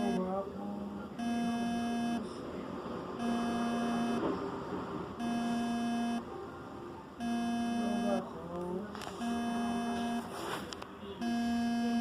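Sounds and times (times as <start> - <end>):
washing machine buzzer beeping: 0.0 - 0.2, 1.2 - 2.3, 3.2 - 4.3, 5.2 - 6.3, 7.2 - 8.3, 9.2 - 10.3, 11.2 - 12.0
faint background noise: 0.0 - 12.0.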